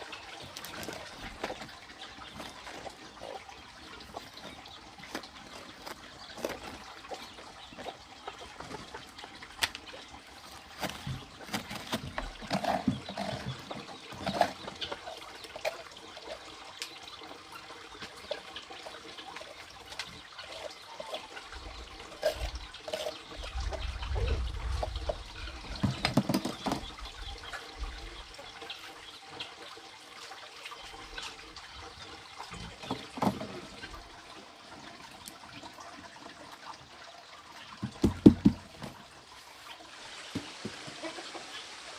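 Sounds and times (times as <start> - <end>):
water trickling and splashing: 0.0 - 41.9
low rumble: 23.4 - 25.9.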